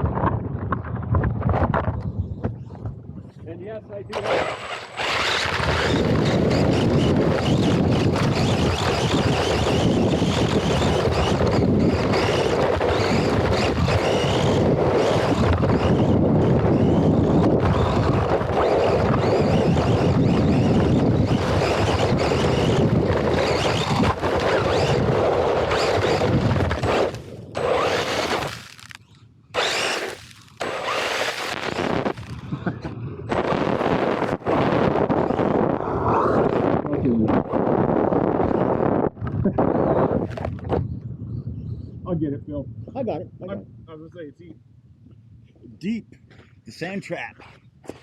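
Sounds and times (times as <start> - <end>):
wind buffeting microphone: 0.0 - 46.7
rc car motor: 4.1 - 32.5
tyres rumbling on gravel: 4.1 - 32.6.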